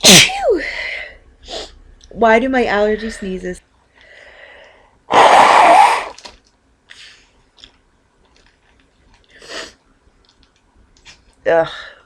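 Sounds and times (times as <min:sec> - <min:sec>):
person sneezing: 0:00.0 - 0:00.7, 0:05.1 - 0:06.2
person breathing: 0:04.0 - 0:05.0.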